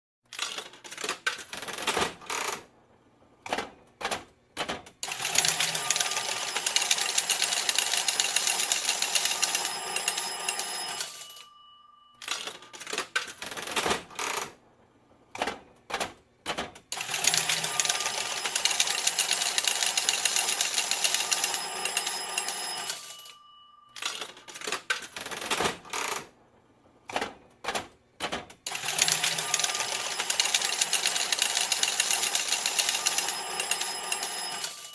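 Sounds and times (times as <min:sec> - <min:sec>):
stream of coins rattling: 0:05.0 - 0:11.3, 0:17.0 - 0:23.2, 0:28.7 - 0:34.9
coins clinking: 0:05.1 - 0:11.5, 0:28.7 - 0:34.9
faint steady ringing tones: 0:05.1 - 0:13.0, 0:17.1 - 0:24.8, 0:28.7 - 0:34.9.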